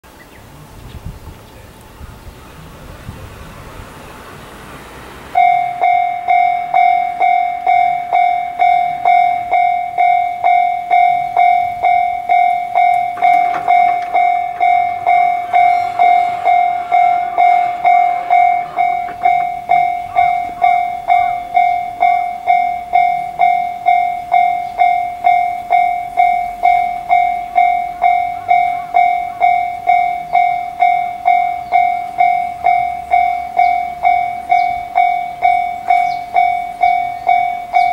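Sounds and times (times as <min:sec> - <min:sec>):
faint rushing noise: 0:00.1 - 0:09.6, 0:10.4 - 0:22.6
level crossing alarm clanging: 0:05.3 - 0:37.9.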